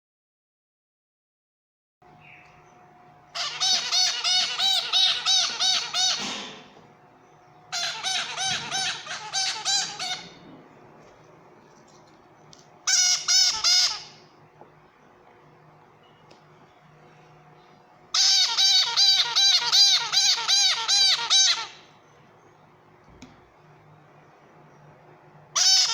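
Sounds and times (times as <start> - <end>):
parrot calling: 3.3 - 6.8, 7.6 - 10.6, 12.8 - 14.4, 18.1 - 22.1, 25.5 - 25.9.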